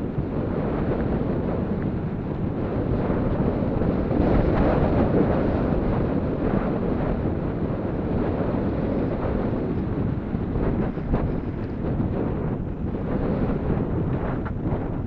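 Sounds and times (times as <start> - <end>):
wind on microphone: 0.0 - 15.0
bicycle rattling and ticking: 8.2 - 15.0.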